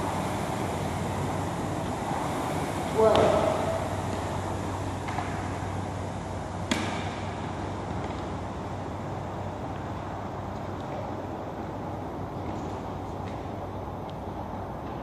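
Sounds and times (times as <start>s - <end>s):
rowing machine hum and whoosh: 0.0s - 15.0s
sharp knocks: 6.7s - 7.2s.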